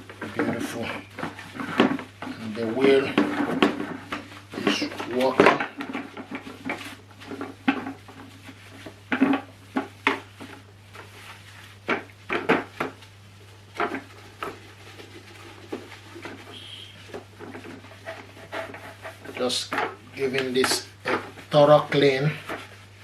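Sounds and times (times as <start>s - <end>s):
vacuum cleaner parts knocking: 0.1s - 8.1s
rubbing by hand: 13.2s - 23.0s.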